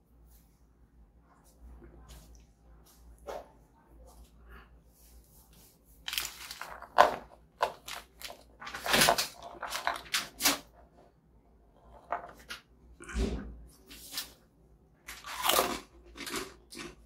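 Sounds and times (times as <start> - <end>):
crinkling biscuit wrapper: 6.0 - 10.7, 15.1 - 16.9.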